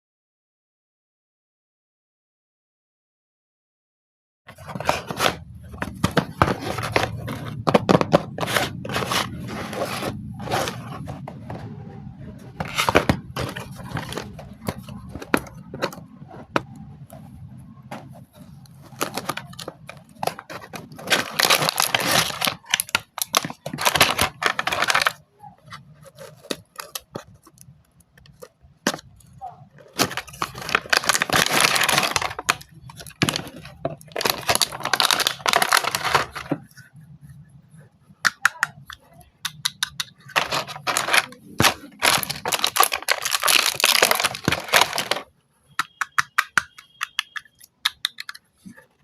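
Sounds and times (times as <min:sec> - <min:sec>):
packaging tearing and crinkling: 0:12.6 - 0:15.9, 0:18.9 - 0:25.2, 0:26.0 - 0:27.5, 0:29.8 - 0:36.6, 0:40.3 - 0:45.3.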